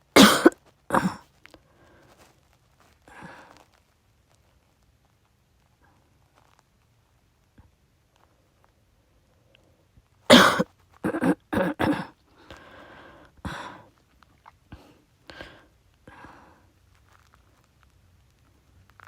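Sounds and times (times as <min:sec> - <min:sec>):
person coughing: 0:00.1 - 0:01.2, 0:10.3 - 0:12.1
person breathing: 0:03.1 - 0:03.6, 0:12.3 - 0:13.9, 0:14.7 - 0:16.7.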